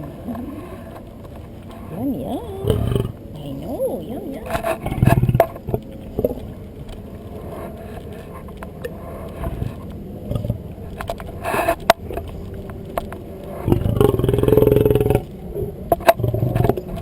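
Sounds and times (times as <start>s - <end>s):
lion growling: 0.0s - 3.7s, 4.4s - 6.4s, 9.0s - 12.3s, 13.5s - 17.0s.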